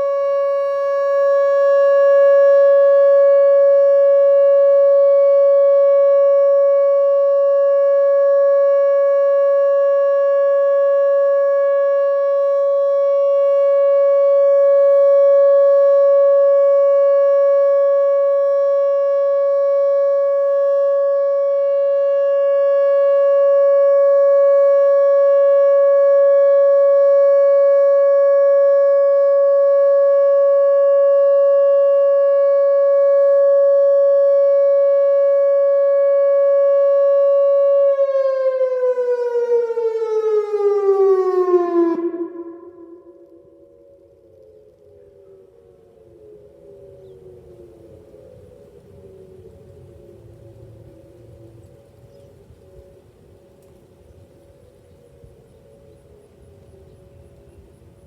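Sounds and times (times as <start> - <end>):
warning siren steady tone: 0.0 - 58.0.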